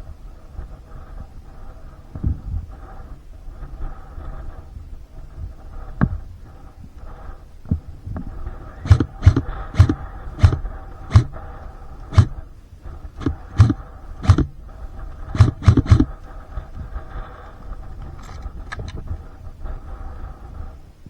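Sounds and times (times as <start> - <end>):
steady low hum: 0.0 - 21.0
sharp knocks with deep thumps: 7.7 - 11.4, 12.1 - 12.4, 13.2 - 14.6, 15.3 - 16.2.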